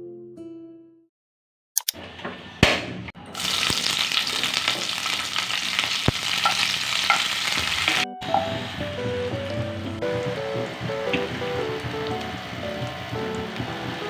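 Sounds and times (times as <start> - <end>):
food sizzling in a pan: 3.3 - 9.4, 10.0 - 14.0
simple stepped melody music: 7.9 - 14.0.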